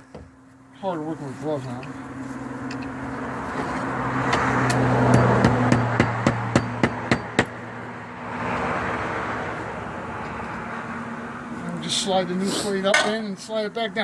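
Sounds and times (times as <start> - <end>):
hammer tapping: 4.3 - 7.5.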